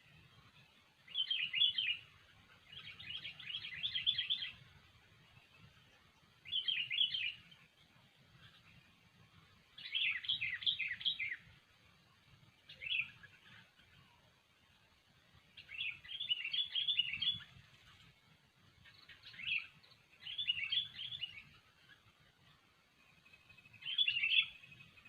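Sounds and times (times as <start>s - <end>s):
bird chattering song: 1.1s - 4.8s, 6.4s - 7.7s, 9.8s - 11.6s, 12.6s - 14.2s, 15.5s - 18.1s, 18.8s - 25.0s.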